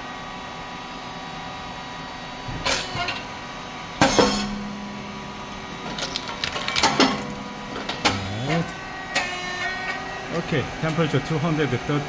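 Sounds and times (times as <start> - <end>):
machine motor humming: 3.3 - 12.0.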